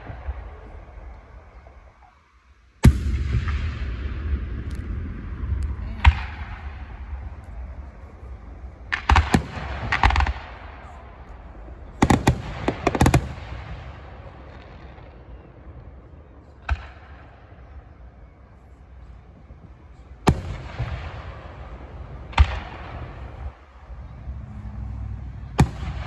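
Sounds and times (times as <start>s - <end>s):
fireworks exploding: 0.0s - 18.1s, 18.8s - 26.0s
low rumble: 2.8s - 15.1s, 19.4s - 26.0s.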